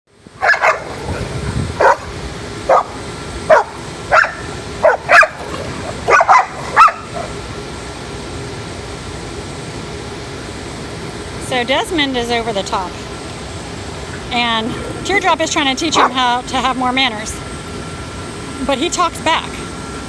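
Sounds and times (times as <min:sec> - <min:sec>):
steady fan-like hum: 0:00.1 - 0:20.0
dogs barking in sharp yips: 0:00.4 - 0:01.2, 0:02.7 - 0:05.5, 0:06.1 - 0:07.3.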